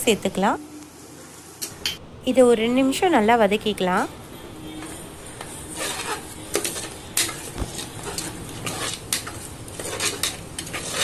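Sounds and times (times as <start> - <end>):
masala frying: 0.0 - 11.0
spoon scraping and clinking on pot: 5.4 - 11.0.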